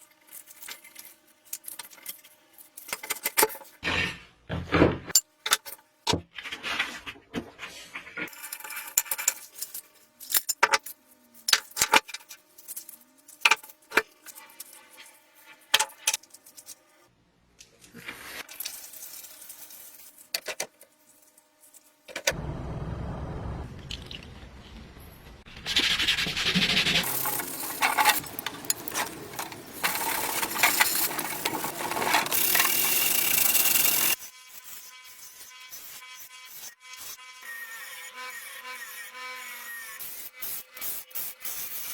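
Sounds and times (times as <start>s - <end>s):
metal parts clinking and scraping: 27.0s - 34.2s.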